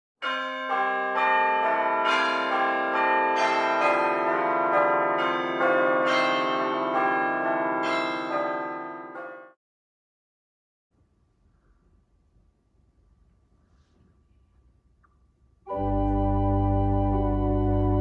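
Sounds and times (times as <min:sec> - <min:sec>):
church bells ringing: 0:00.2 - 0:09.6, 0:15.7 - 0:18.0.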